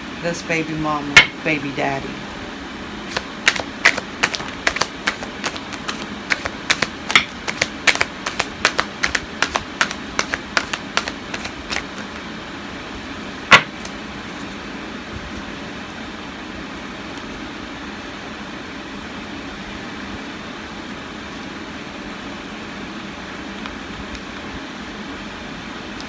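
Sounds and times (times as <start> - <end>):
cards shuffling clicks and snaps: 3.1 - 12.3.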